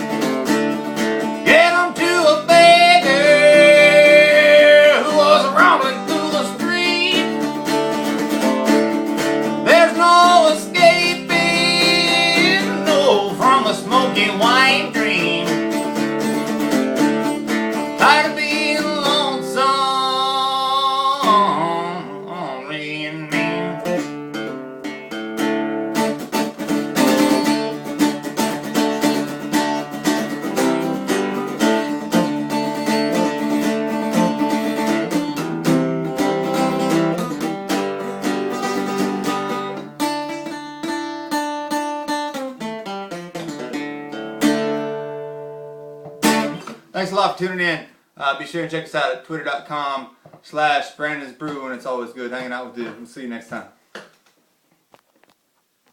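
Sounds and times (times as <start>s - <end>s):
strummed acoustic guitar: 0.0s - 47.5s
man singing: 1.4s - 7.5s, 9.6s - 15.8s, 18.0s - 24.2s.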